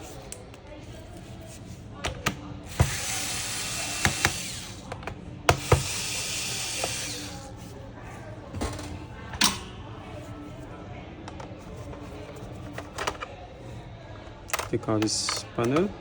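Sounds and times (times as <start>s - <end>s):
electric screwdriver whirring: 2.7s - 4.9s, 5.5s - 7.5s.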